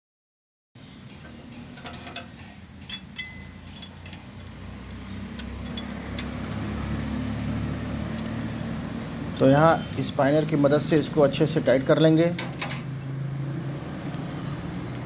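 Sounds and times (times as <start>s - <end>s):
spanner clicking on metal bolts: 1.0s - 6.9s, 8.0s - 9.8s, 12.2s - 14.2s.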